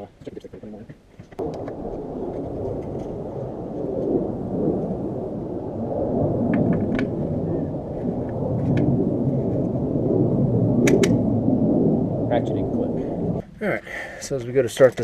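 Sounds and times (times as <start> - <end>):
wind buffeting microphone: 1.3 - 15.0.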